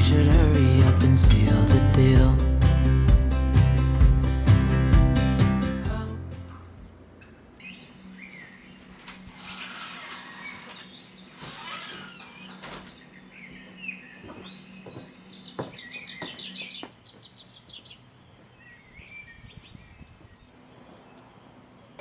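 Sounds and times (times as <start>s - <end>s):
small birds chirping and singing: 7.2s - 22.0s
bird trill: 7.6s - 20.7s.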